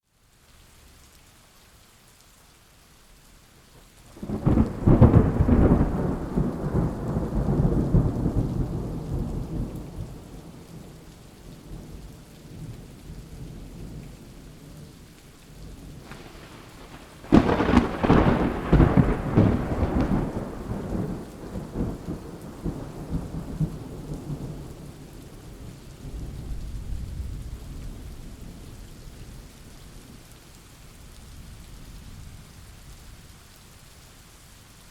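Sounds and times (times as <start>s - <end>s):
steady rain: 0.0s - 34.9s
soft rumble of thunder: 4.1s - 33.6s
thunderclaps rolling: 4.2s - 10.7s, 15.9s - 25.0s.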